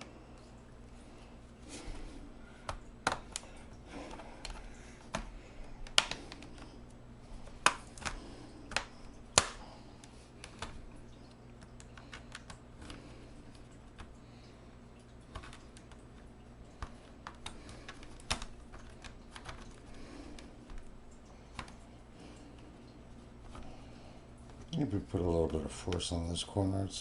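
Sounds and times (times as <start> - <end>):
plastic clips snapping: 2.6 - 3.5, 4.1 - 6.7, 7.4 - 10.8, 11.6 - 13.0, 16.8 - 20.9.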